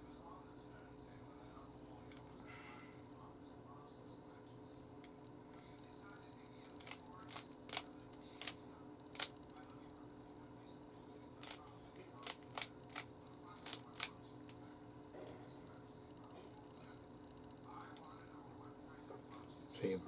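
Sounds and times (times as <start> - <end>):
plastic puzzle cube clicking: 6.8 - 8.6, 12.2 - 14.1.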